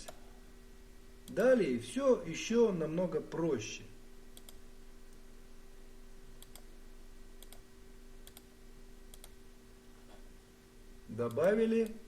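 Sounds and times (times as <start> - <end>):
low electrical hum: 0.0 - 12.0
computer mouse clicks: 4.4 - 5.2, 6.4 - 6.7, 7.4 - 7.6, 8.2 - 8.5, 9.1 - 9.4.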